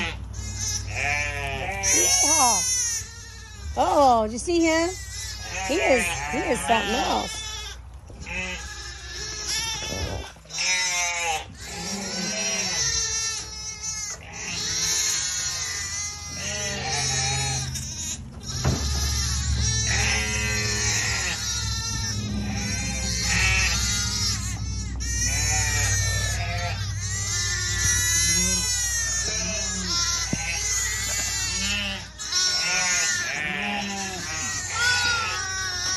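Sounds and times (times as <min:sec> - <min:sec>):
low steady rumble: 0:00.0 - 0:35.9
sheep and lambs bleating: 0:00.0 - 0:35.9.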